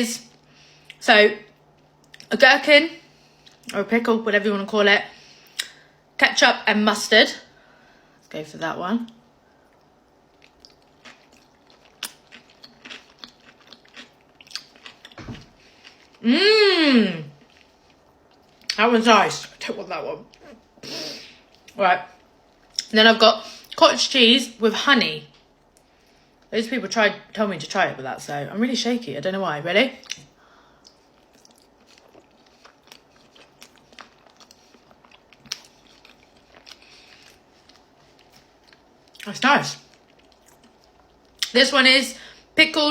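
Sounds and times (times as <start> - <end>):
person chewing wetly: 9.6 - 16.2, 30.0 - 41.5.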